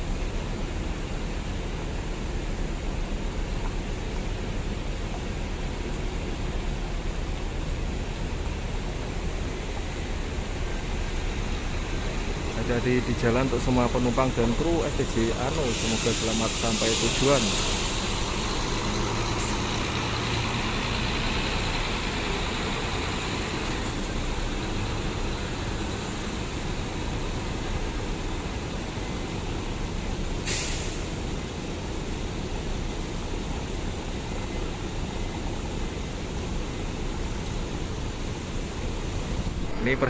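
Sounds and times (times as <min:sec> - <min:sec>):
bus engine droning: 0:00.0 - 0:40.0
short sharp hiss: 0:15.5 - 0:18.6, 0:30.4 - 0:31.2.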